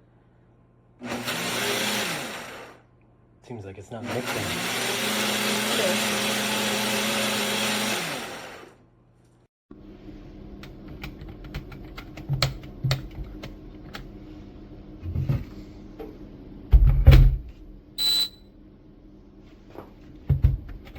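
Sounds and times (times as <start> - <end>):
blender motor running: 1.0 - 2.9, 4.0 - 8.8.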